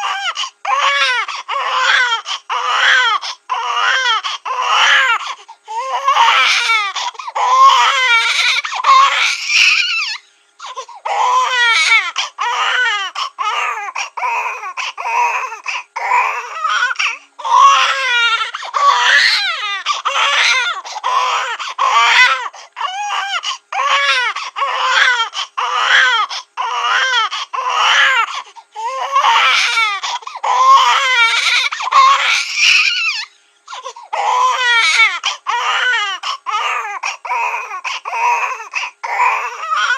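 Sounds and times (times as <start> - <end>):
cartoon baby crying: 6.0 - 10.2, 11.1 - 28.2, 29.0 - 33.3, 34.2 - 39.9.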